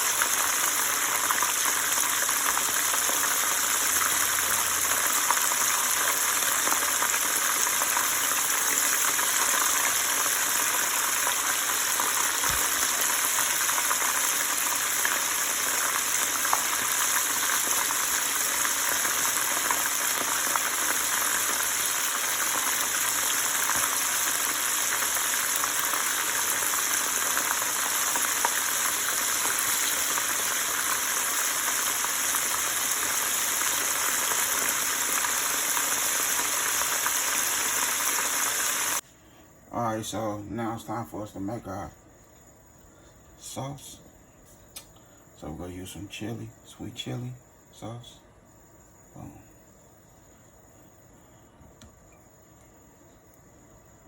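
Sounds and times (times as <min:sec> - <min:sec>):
food sizzling in oil: 0:00.0 - 0:39.0.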